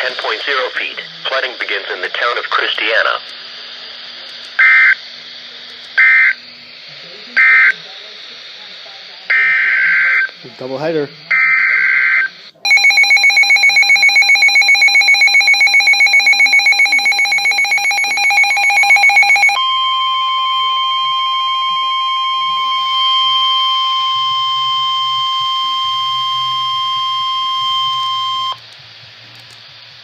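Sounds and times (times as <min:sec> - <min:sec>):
pulsing electronic beep: 0:11.3 - 0:28.6.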